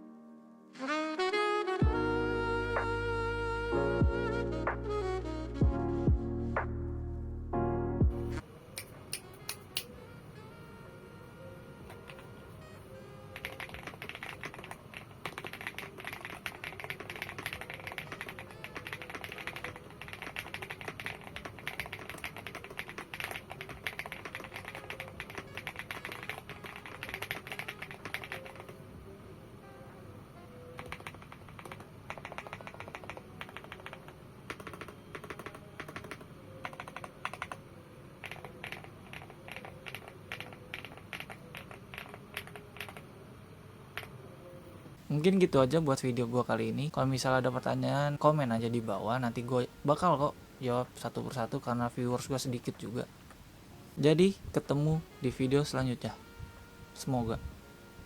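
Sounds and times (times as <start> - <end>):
soft background music: 0.0 - 53.1, 53.7 - 58.0
mechanical keyboard typing: 13.3 - 28.8, 30.8 - 37.6, 38.2 - 43.0.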